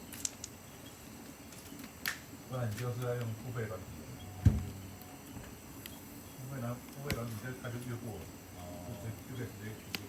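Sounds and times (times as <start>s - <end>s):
dull low thump: 4.4s - 4.8s.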